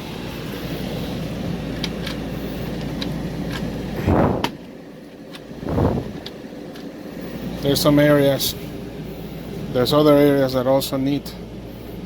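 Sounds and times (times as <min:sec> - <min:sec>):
air conditioner humming: 0:00.0 - 0:12.0
handling noise: 0:01.7 - 0:06.9.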